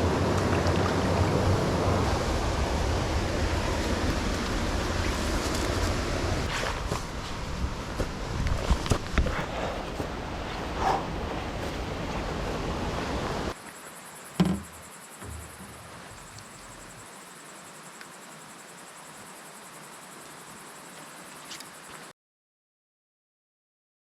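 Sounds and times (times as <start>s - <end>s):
mountain stream running: 0.0s - 22.1s
steady hiss: 12.6s - 22.1s
single knock: 14.4s - 15.4s.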